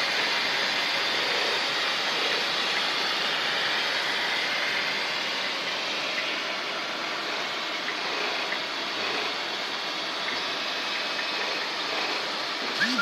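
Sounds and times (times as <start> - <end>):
welding machine hissing: 10.2 - 13.0.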